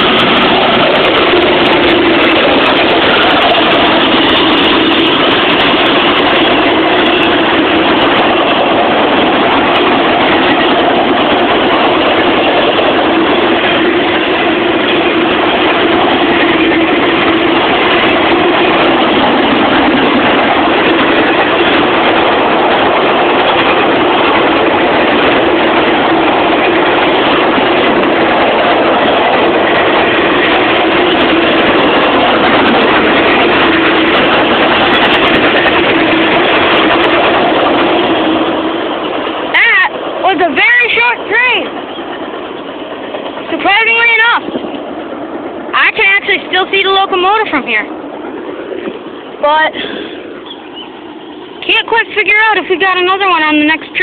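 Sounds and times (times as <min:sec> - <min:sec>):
train wheels roaring on rails: 0:00.0 - 0:54.0.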